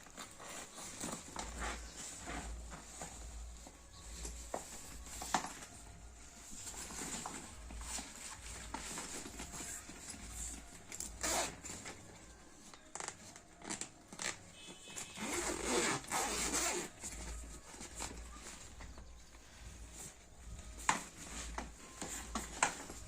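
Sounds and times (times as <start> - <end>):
zipper on fabric bag: 11.0 - 11.8, 15.1 - 17.4.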